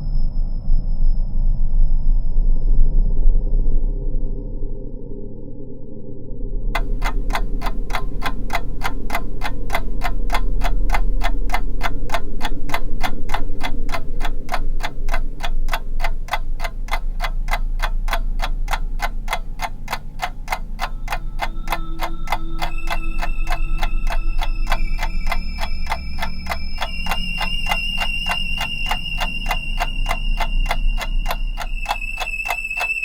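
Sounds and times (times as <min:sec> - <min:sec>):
clock ticking: 0:06.8 - 0:33.0
high ringing tones: 0:06.8 - 0:33.0.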